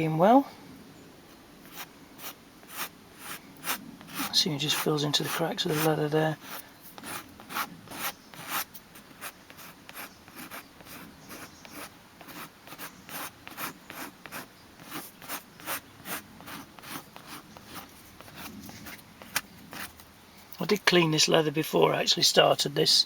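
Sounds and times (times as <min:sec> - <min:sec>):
tool scraping leather: 0:01.7 - 0:20.0.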